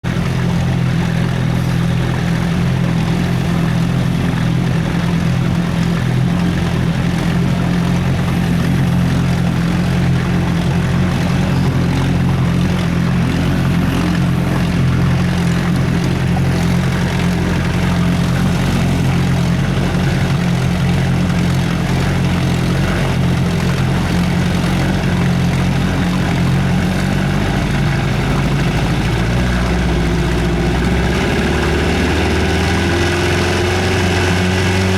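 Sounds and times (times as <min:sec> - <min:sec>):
outboard motor running: 0:00.0 - 0:34.9.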